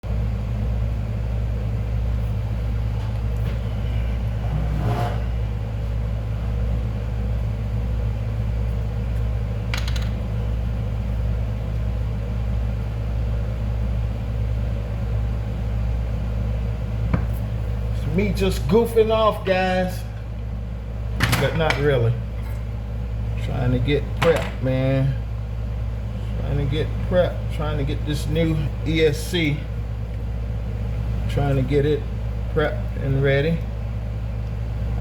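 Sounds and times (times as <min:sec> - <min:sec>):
steady low hum: 0:00.0 - 0:35.0.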